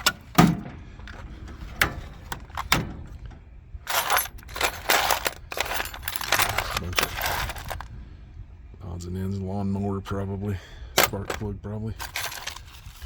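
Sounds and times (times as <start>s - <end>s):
metal parts rattling and scraping: 0.0s - 8.0s, 10.9s - 13.0s
metal parts clinking: 1.0s - 7.9s, 11.0s - 13.0s.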